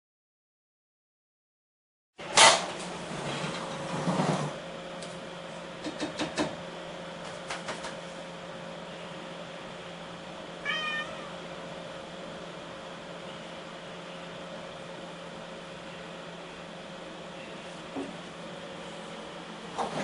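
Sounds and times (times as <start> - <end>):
cat meowing: 10.6 - 11.4.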